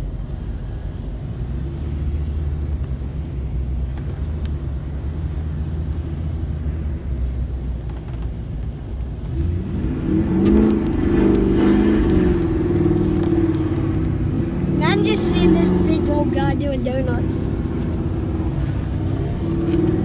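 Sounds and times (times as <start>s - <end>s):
vehicle engine running and revving: 0.0s - 20.0s.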